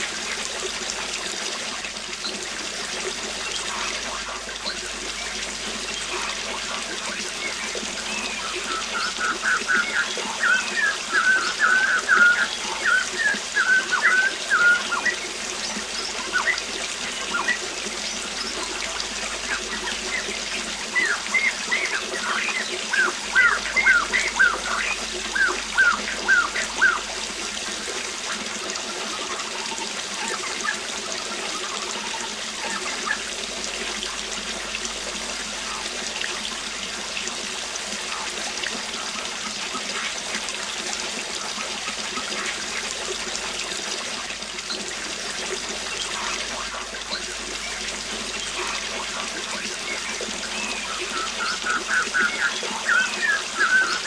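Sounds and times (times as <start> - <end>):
waterfall running: 0.0 - 54.0
birds singing: 3.1 - 34.4, 45.6 - 54.0.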